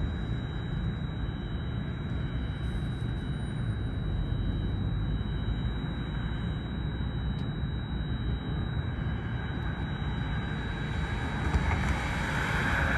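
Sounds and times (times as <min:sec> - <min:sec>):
faint high whine: 0:00.0 - 0:12.9
passing traffic: 0:10.2 - 0:12.9
wind on microphone: 0:10.9 - 0:12.9.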